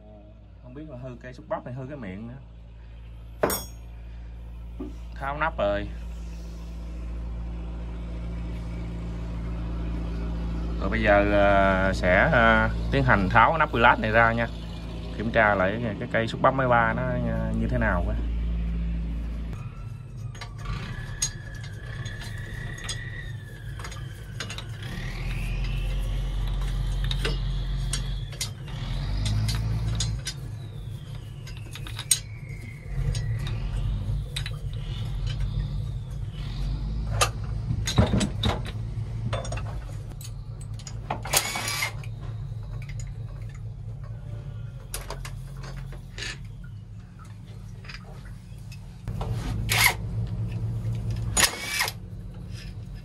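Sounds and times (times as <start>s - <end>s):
whining tone: 0.0s - 53.0s.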